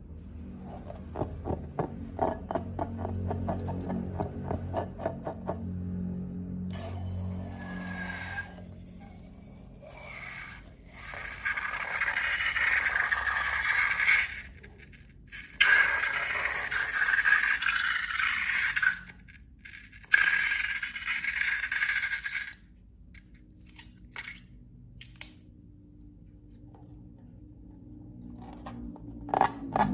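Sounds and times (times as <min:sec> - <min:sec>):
long scraping strokes: 0:07.0 - 0:14.9.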